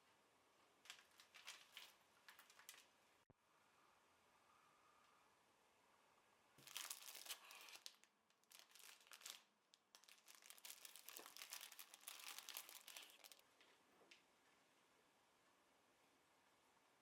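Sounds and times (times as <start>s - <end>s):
packaging crinkling: 0.8s - 3.0s, 6.6s - 13.4s.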